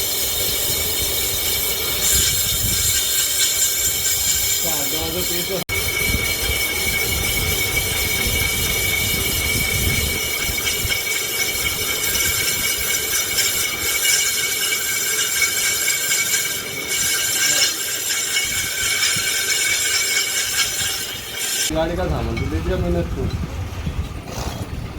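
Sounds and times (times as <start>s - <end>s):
lathe cutting metal whine: 0.0s - 23.8s.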